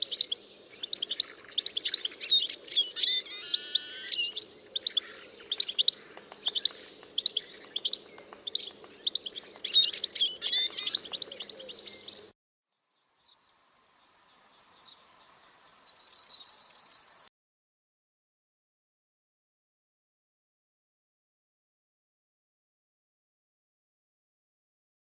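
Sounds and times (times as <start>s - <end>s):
bird rapid high chirps: 0.0s - 12.3s, 13.2s - 17.3s
songbirds chirping and whistling: 0.0s - 12.3s, 12.9s - 17.3s.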